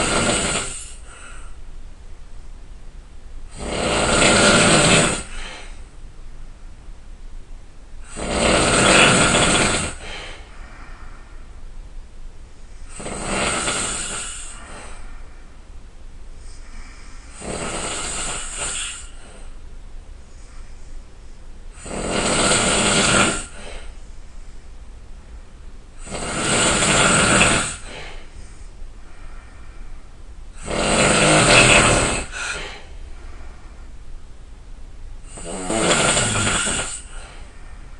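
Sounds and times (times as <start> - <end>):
person snoring loudly: 0.0 - 1.4, 3.5 - 5.8, 8.0 - 10.4, 12.9 - 15.0, 17.3 - 19.3, 21.8 - 23.9, 26.0 - 28.4, 30.6 - 32.9, 35.3 - 37.5
quiet breathing: 0.0 - 2.6, 3.2 - 6.0, 7.9 - 37.9.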